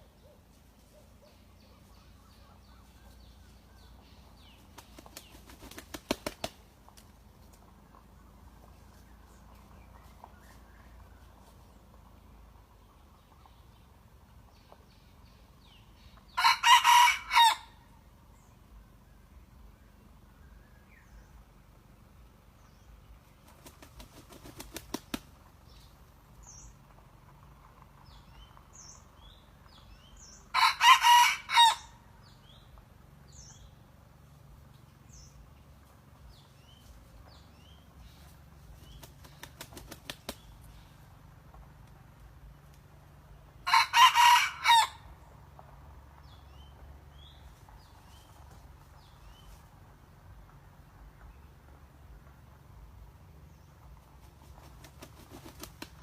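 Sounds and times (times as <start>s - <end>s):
wing-flapping rattle: 4.6s - 7.2s, 23.4s - 25.4s, 38.6s - 40.7s, 54.2s - 56.0s
rooster crowing: 16.4s - 17.8s, 30.5s - 32.0s, 43.6s - 45.0s.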